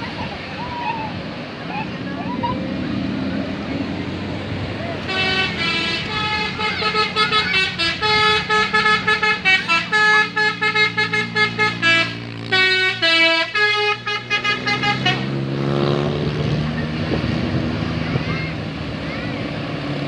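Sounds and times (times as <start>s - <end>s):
bus engine humming: 0.0s - 20.0s
bus musical horn melody: 5.0s - 15.6s.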